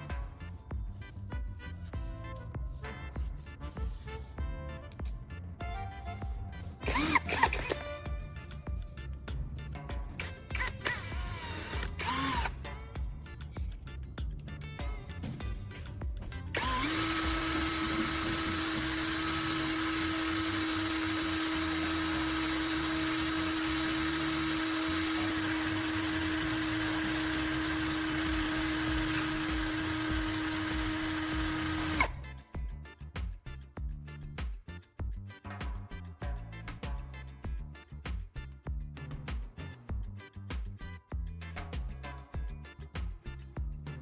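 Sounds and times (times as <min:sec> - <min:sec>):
background music: 0:00.0 - 0:44.0
small power tool motor running: 0:06.8 - 0:08.6, 0:10.1 - 0:12.8, 0:16.6 - 0:32.5.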